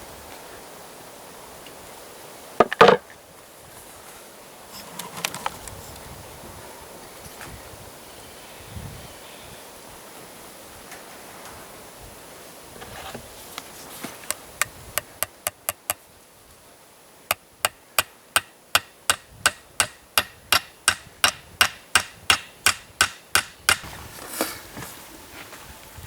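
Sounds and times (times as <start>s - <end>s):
hammer strikes: 18.0s - 23.9s.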